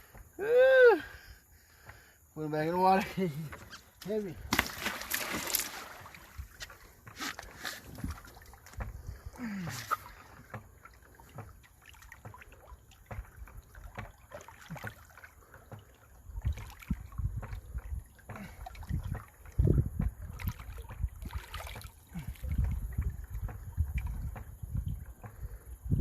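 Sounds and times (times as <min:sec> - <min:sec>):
water sloshing and splashing: 0:01.1 - 0:26.0
wind gusts: 0:18.8 - 0:21.5, 0:22.2 - 0:26.0.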